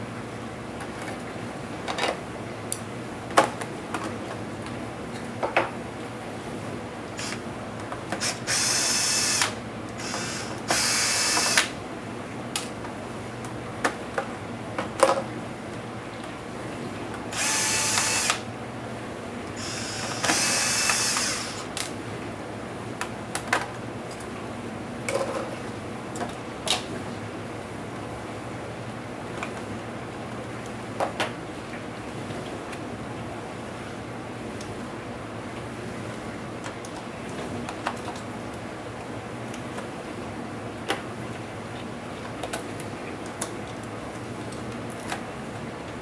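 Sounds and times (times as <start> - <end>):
electric screwdriver whirring: 7.2 - 7.4, 8.2 - 11.8, 17.3 - 18.5, 19.6 - 21.9.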